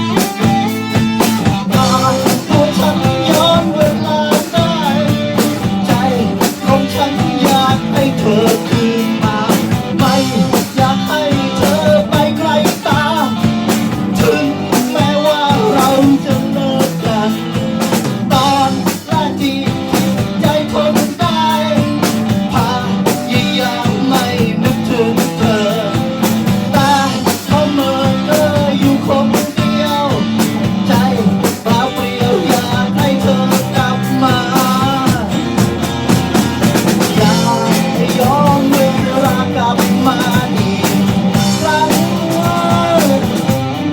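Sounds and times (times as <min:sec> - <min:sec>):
rock band playing: 0:00.0 - 0:43.9
bending melody line: 0:30.8 - 0:43.9.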